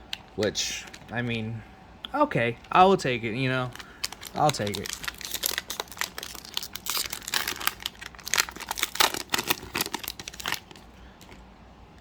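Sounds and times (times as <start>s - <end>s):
wrapper crinkling and tearing: 3.6s - 11.4s.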